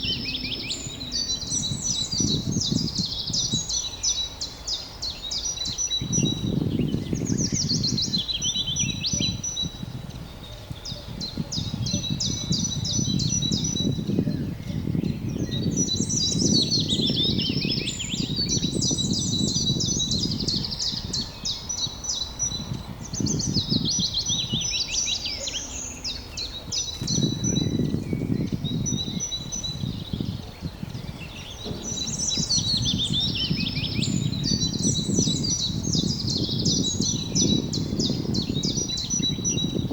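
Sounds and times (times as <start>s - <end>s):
low rumbling noise: 0.0s - 3.6s, 25.8s - 39.9s
songbirds chirping and singing: 0.0s - 39.9s.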